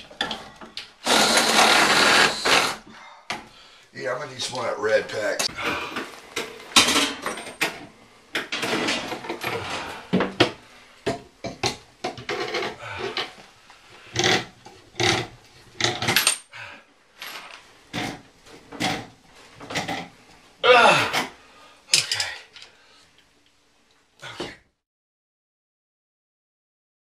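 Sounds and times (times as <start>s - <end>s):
hand tools and pipe fittings clattering: 0.0s - 3.4s, 5.4s - 13.4s, 21.0s - 22.8s.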